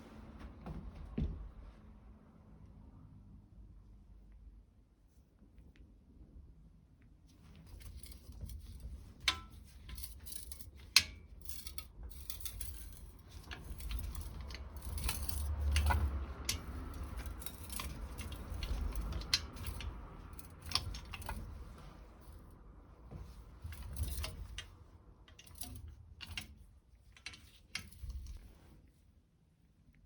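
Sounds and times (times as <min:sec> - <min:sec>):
low rumbling handling noise: 0:07.4 - 0:29.0
metal tools clicking and clinking: 0:07.8 - 0:21.6, 0:23.6 - 0:24.7, 0:25.3 - 0:26.5.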